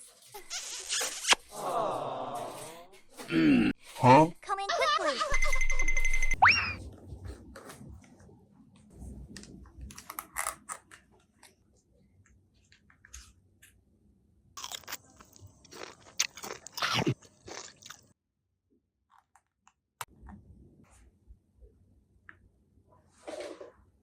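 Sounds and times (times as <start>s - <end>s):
crunchy biting and chewing: 14.6s - 18.1s.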